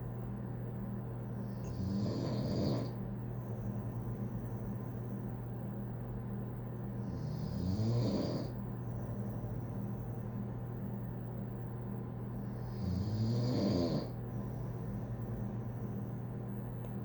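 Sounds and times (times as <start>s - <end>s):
steady low hum: 0.0s - 17.0s
person snoring: 12.7s - 14.1s.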